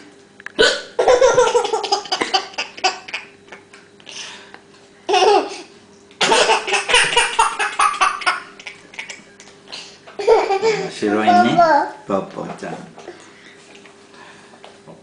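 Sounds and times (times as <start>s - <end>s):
small child laughing: 1.0s - 3.9s, 5.1s - 9.3s, 10.2s - 11.6s.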